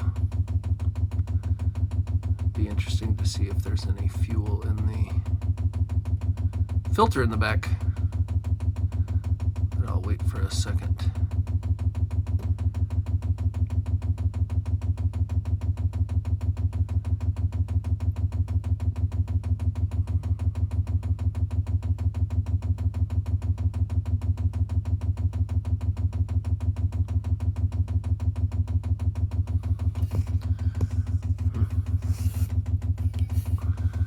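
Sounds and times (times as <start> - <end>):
low hum: 0.0 - 13.1, 29.4 - 34.0
fuel pump ticking rapidly: 0.0 - 34.0.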